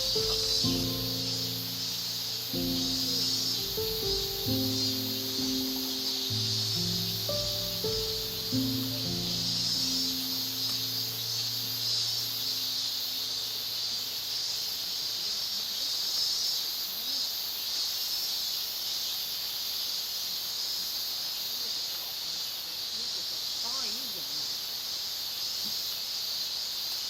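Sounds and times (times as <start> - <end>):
insect pulsing trill: 0.0 - 16.6
insects shrill drone: 0.0 - 27.0.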